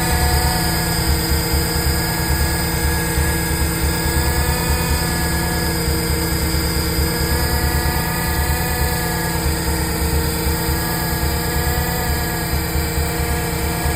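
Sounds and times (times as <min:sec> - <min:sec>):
car engine running: 0:00.0 - 0:13.9.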